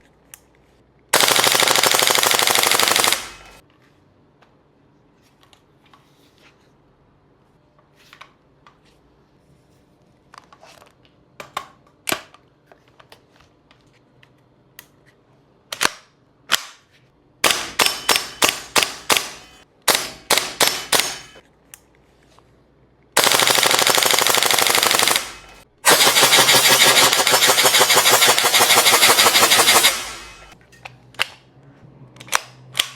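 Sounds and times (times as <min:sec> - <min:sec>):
airsoft rifle firing bursts: 0:01.2 - 0:03.6, 0:17.4 - 0:21.4, 0:23.2 - 0:30.6.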